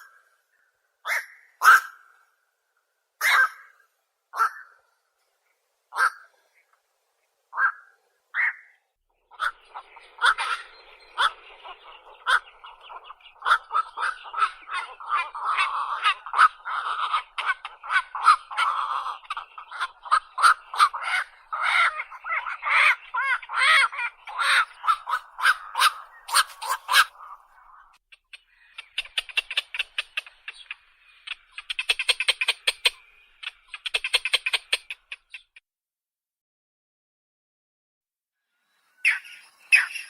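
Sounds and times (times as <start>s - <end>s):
heron calls: 1.0s - 2.2s, 3.2s - 4.8s, 5.9s - 6.5s, 7.5s - 35.5s
sharp clicks: 28.1s - 35.6s.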